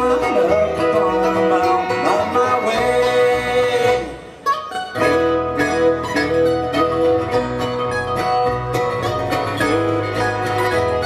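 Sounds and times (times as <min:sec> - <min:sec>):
picked string instruments: 0:00.0 - 0:11.0
steady bass line: 0:05.0 - 0:11.0.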